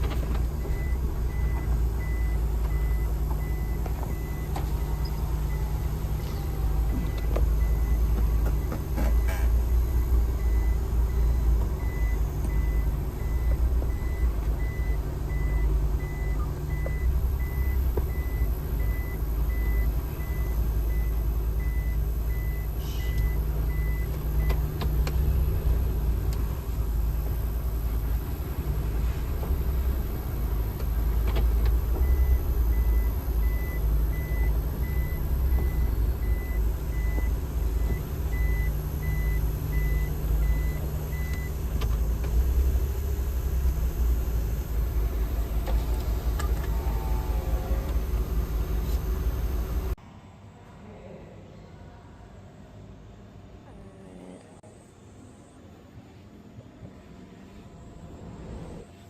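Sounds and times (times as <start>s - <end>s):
vehicle rumbling: 0.0s - 50.2s.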